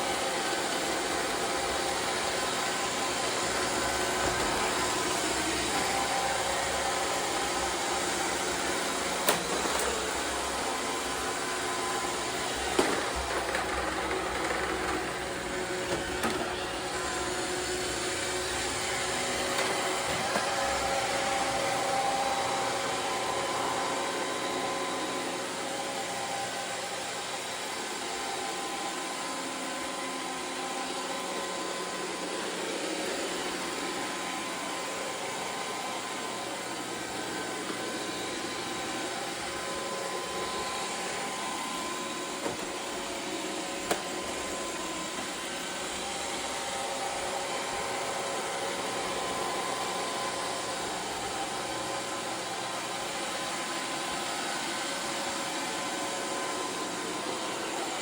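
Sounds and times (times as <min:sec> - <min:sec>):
robot vacuum whirring: 0:00.1 - 0:58.0.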